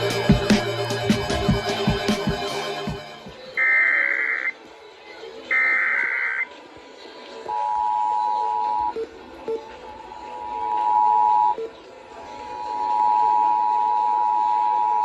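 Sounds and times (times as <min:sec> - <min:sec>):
two-tone attention signal: 0:07.5 - 0:09.1, 0:10.4 - 0:11.7, 0:12.6 - 0:15.0.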